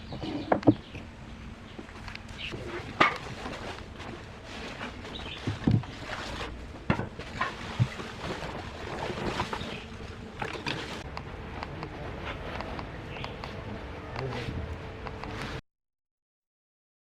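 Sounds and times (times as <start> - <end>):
faint scraping and rustling: 0.0 - 1.0, 1.7 - 11.0.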